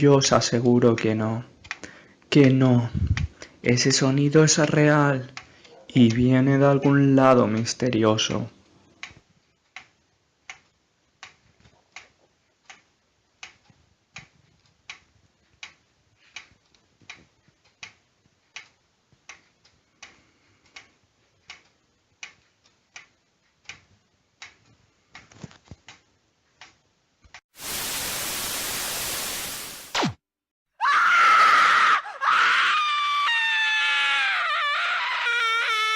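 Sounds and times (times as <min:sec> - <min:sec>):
faint mechanical ticking: 0:07.5 - 0:27.4
loud burst of hiss: 0:27.6 - 0:30.1
loud scream: 0:30.8 - 0:35.9.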